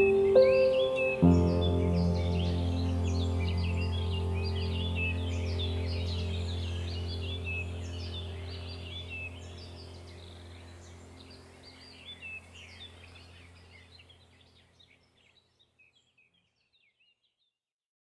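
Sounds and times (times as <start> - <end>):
low steady hum: 0.0 - 14.9
birds chirping: 0.0 - 17.2.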